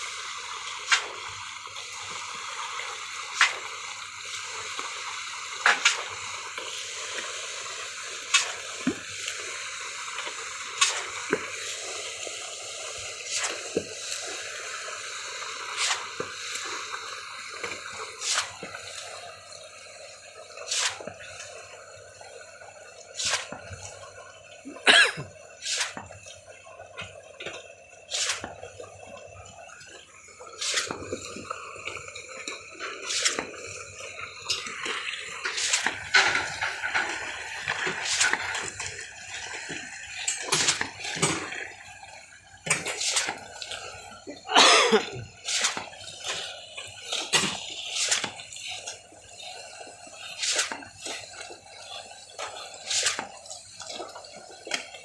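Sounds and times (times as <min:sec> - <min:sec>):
wet concrete slapping and splashing: 0:00.7 - 0:01.4, 0:03.2 - 0:03.8, 0:05.6 - 0:06.2, 0:08.2 - 0:09.1, 0:10.1 - 0:11.8, 0:13.2 - 0:14.2, 0:15.6 - 0:16.4, 0:17.6 - 0:18.8, 0:20.6 - 0:21.2, 0:23.1 - 0:23.9, 0:25.6 - 0:26.1, 0:28.1 - 0:28.6, 0:30.6 - 0:31.5, 0:32.9 - 0:33.9, 0:34.5 - 0:41.8, 0:42.6 - 0:49.1, 0:50.3 - 0:51.7, 0:52.4 - 0:54.9.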